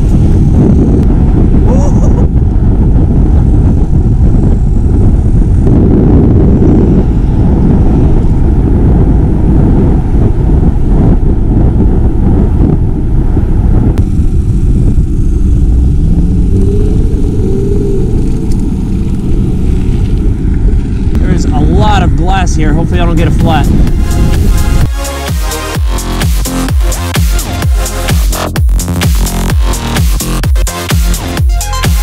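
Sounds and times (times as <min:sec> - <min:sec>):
bike tyre rumble on rocks: 0:00.0 - 0:24.8
wind buffeting microphone: 0:00.0 - 0:29.0.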